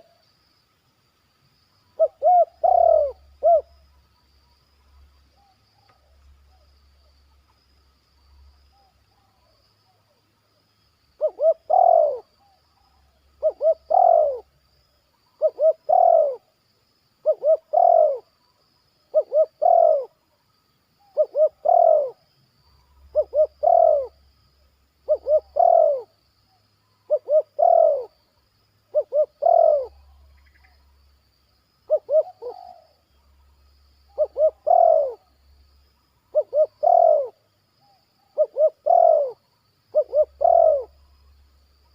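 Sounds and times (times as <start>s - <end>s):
dove cooing: 2.0s - 3.8s, 11.2s - 14.5s, 15.4s - 16.5s, 17.2s - 18.3s, 19.1s - 20.2s, 21.0s - 22.2s, 23.1s - 24.2s, 25.0s - 26.2s, 27.0s - 28.2s, 28.9s - 30.7s, 31.9s - 33.0s, 34.1s - 35.3s, 36.3s - 41.0s.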